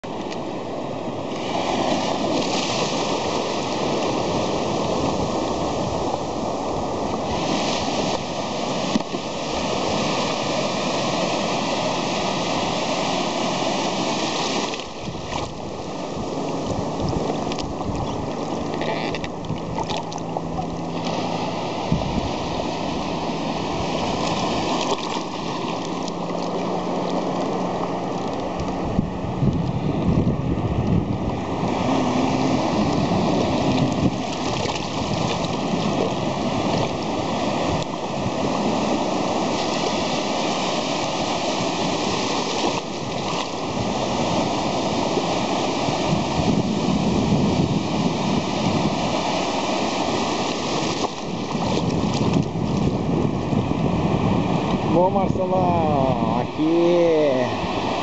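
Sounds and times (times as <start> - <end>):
waves breaking: 0.0 - 58.0
wind on microphone: 0.0 - 58.0.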